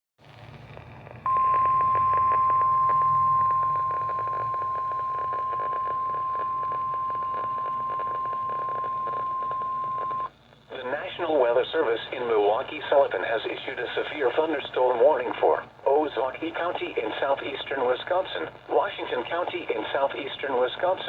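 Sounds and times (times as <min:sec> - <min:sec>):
faint radio hiss: 0:00.2 - 0:21.0
steady warning alarm tone: 0:01.3 - 0:10.3.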